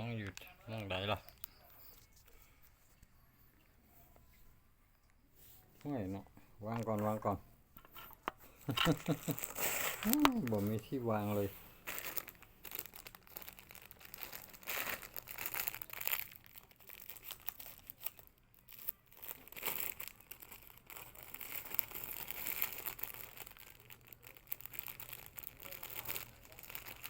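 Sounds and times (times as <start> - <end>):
plastic bag crinkling: 8.7 - 27.0.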